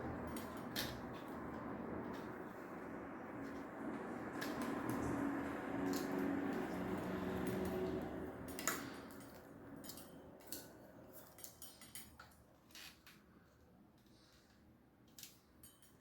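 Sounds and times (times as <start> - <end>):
metal parts clicking and clinking: 7.4 - 13.2, 15.0 - 16.0.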